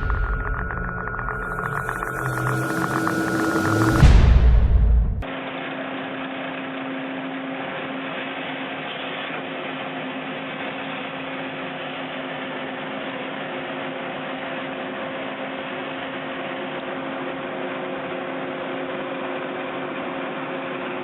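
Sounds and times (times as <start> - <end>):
skid steer engine drone: 0.0 - 5.2.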